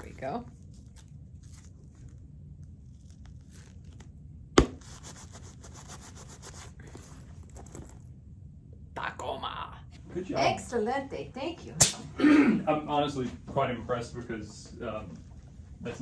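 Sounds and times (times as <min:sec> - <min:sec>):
sharp knock: 0:04.6 - 0:04.8, 0:11.8 - 0:12.1.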